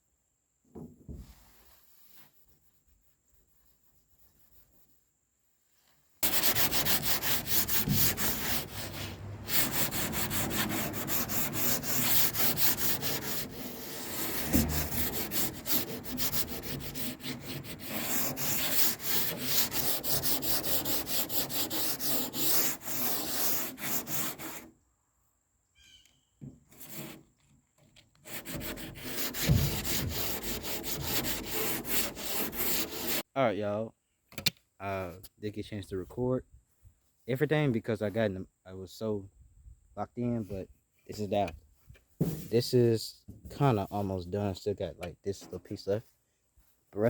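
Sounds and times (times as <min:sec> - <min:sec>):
sanding scraping on metal: 0:06.2 - 0:24.7, 0:26.7 - 0:27.2, 0:28.2 - 0:33.2.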